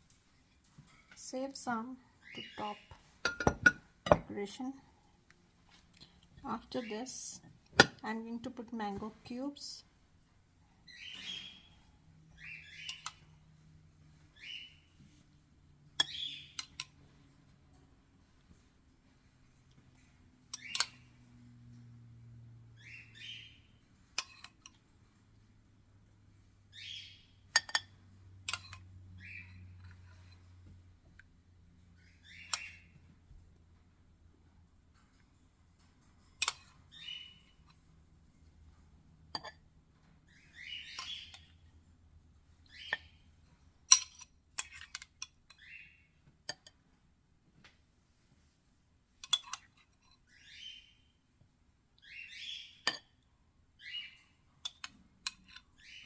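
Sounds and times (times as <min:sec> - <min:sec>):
spoon clinking against dish: 0:03.2 - 0:04.2, 0:39.4 - 0:39.6.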